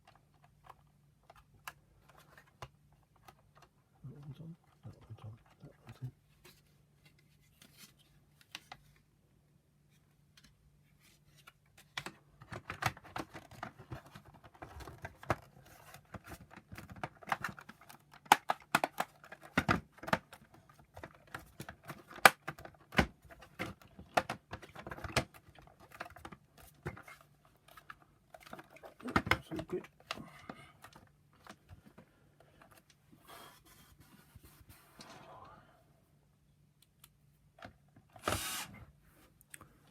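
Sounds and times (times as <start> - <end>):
plastic parts clicking and knocking: 0.0 - 4.4, 11.5 - 33.0.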